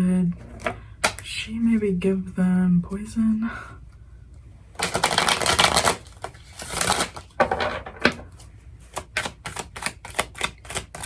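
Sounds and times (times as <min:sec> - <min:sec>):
cards shuffling: 0:04.8 - 0:11.0.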